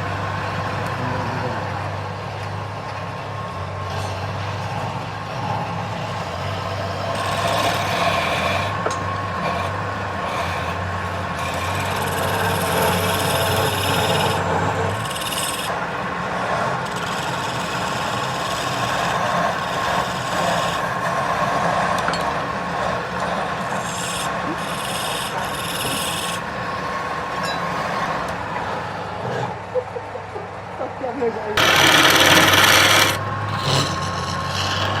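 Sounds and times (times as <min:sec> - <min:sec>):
wood lathe whining: 0:00.0 - 0:29.7, 0:31.6 - 0:35.0
turning tool scraping wood: 0:03.9 - 0:26.6, 0:31.6 - 0:35.0.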